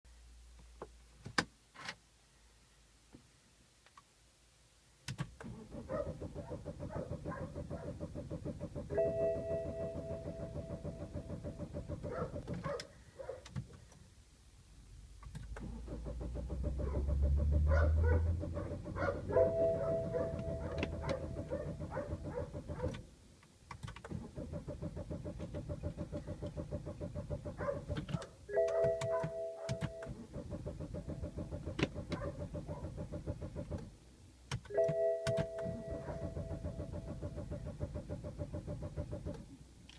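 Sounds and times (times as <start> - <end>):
low engine cranking sound: 5.4 - 12.5, 15.3 - 23.0, 28.9 - 33.9, 35.4 - 39.5.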